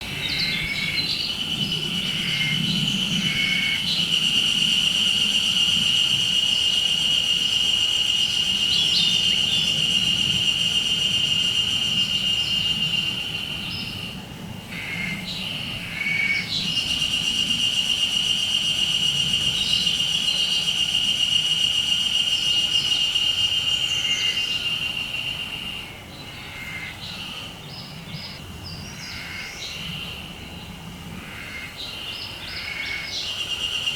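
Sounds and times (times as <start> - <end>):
cicada buzzing: 0.1 - 14.0, 14.8 - 25.6.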